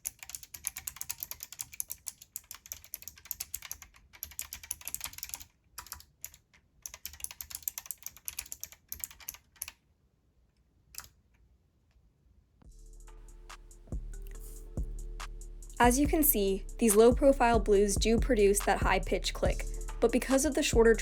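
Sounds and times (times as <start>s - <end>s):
mechanical keyboard typing: 0.0s - 9.8s.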